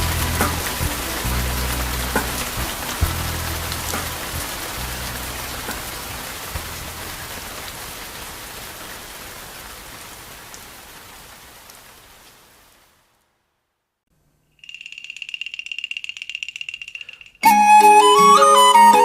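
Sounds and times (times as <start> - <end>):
steady rain: 0.0 - 14.0.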